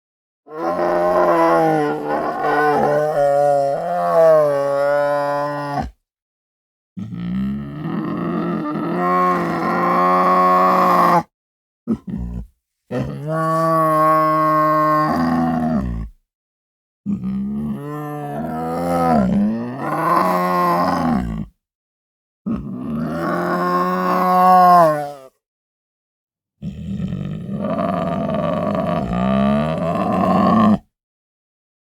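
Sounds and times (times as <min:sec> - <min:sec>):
tiger grunt: 0:00.5 - 0:06.0, 0:11.9 - 0:16.2
tiger roaring: 0:00.5 - 0:06.0, 0:22.5 - 0:25.3, 0:27.2 - 0:30.9.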